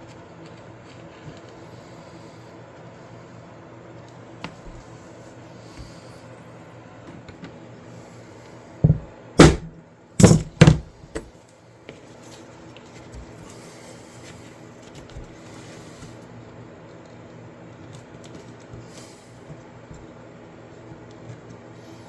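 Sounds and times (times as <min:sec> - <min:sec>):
sharp knocks: 0:08.9 - 0:10.9.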